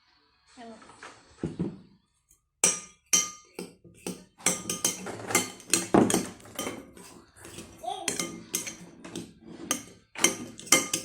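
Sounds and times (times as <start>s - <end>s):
utensil clinking against bowl: 2.6s - 11.0s.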